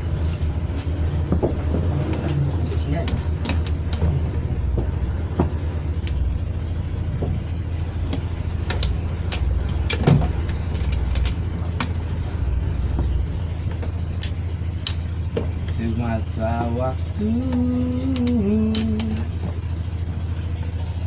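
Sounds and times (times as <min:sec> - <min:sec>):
low mechanical rumble: 0:00.0 - 0:21.0
sharp clicks and taps: 0:17.5 - 0:19.3.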